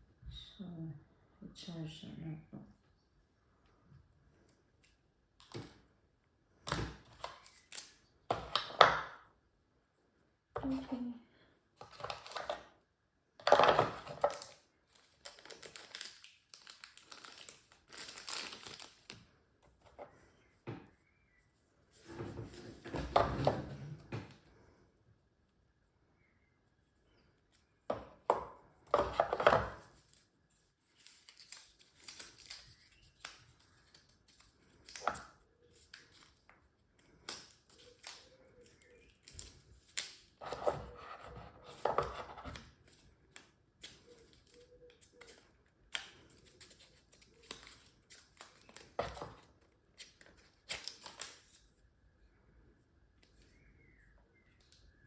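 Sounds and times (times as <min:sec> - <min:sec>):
packaging rustling and scraping: 0:13.4 - 0:19.2.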